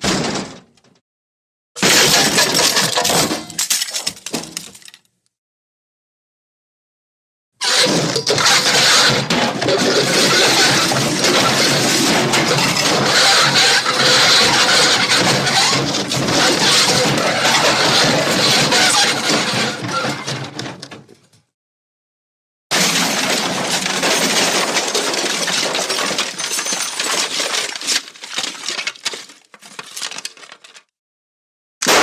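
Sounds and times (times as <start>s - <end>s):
loud crash: 0.0s - 0.7s, 1.8s - 3.6s, 22.7s - 26.4s
falling debris clinks and rattles: 1.8s - 5.1s, 7.6s - 21.0s, 22.7s - 30.9s.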